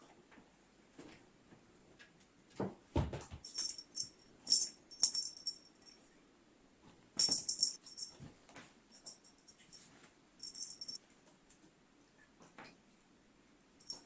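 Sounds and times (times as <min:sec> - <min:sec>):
high jingling rattle: 0:03.4 - 0:06.0, 0:07.2 - 0:08.2, 0:08.9 - 0:11.0, 0:13.8 - 0:14.0.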